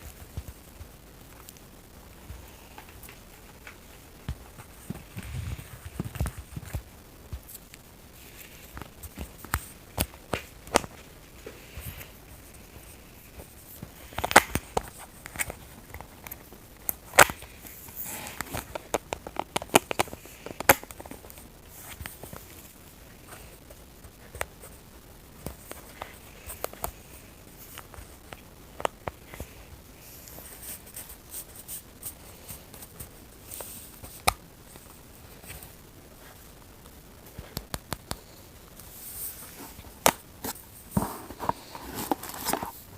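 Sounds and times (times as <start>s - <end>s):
snack packaging crinkling: 8.2s - 22.7s.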